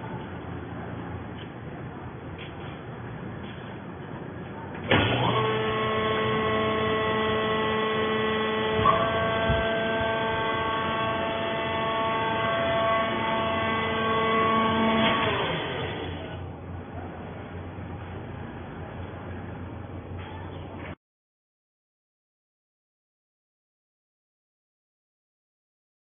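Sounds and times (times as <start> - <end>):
hydraulic power unit whining: 4.8 - 16.7.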